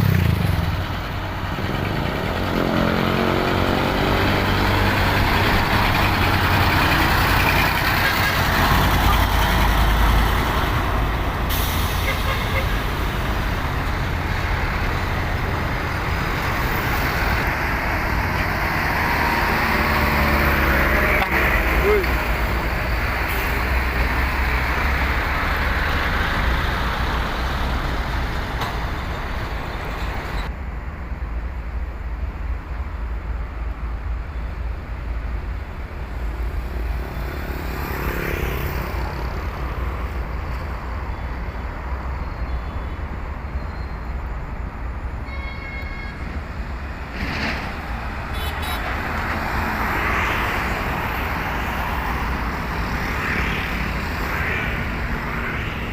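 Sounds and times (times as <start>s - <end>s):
road traffic: 0.0s - 55.9s
truck diesel engines rumbling: 0.0s - 55.9s
short horn toot: 11.9s - 12.8s, 45.2s - 46.3s.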